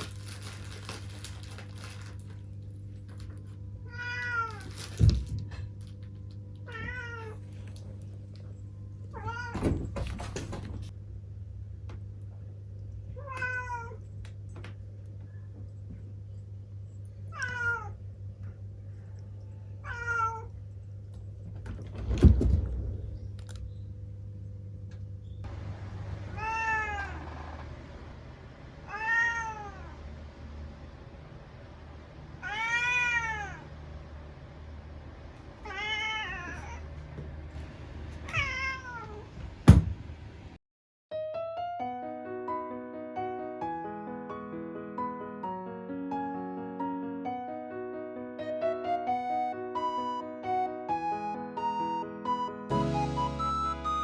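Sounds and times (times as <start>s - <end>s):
cat meowing: 3.8s - 4.8s, 6.6s - 7.5s, 9.1s - 9.6s, 13.2s - 14.0s, 17.3s - 18.0s, 19.8s - 20.5s, 26.3s - 27.3s, 28.9s - 30.0s, 32.4s - 33.7s, 35.6s - 36.9s, 38.2s - 39.2s
loud thumps: 39.7s - 40.0s.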